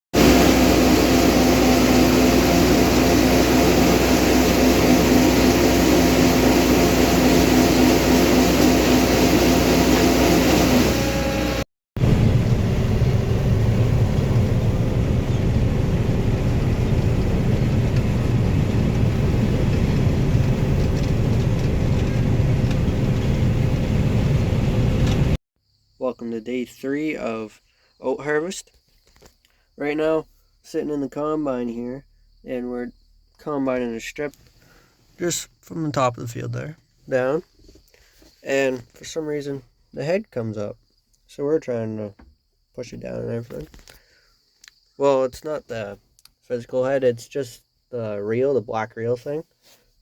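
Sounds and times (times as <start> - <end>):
combine harvester running: 0.2 - 25.4.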